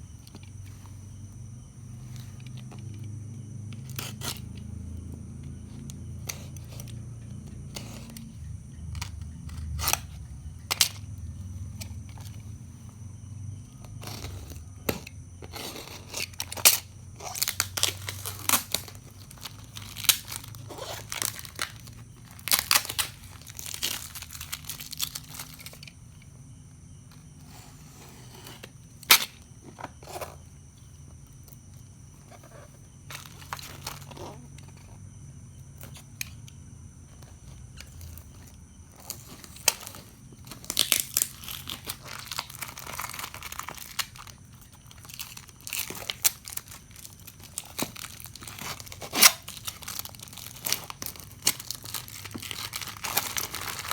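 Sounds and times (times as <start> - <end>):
plastic packaging crinkling: 16.4 - 25.9, 39.0 - 53.9.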